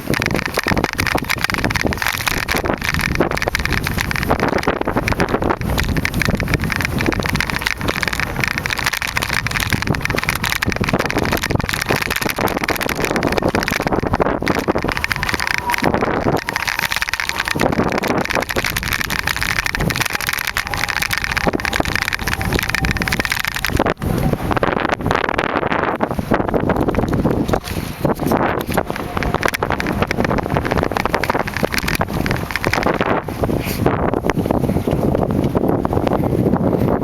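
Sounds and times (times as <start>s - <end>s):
bike knocks and clatters: 0.0s - 23.9s
bike tyres crunching on gravel: 0.0s - 24.0s, 26.4s - 33.4s
wind buffeting microphone: 0.0s - 37.0s.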